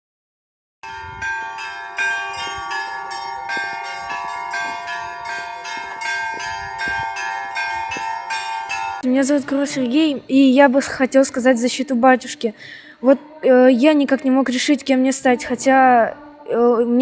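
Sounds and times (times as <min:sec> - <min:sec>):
church bells ringing a peal: 0:00.8 - 0:09.8.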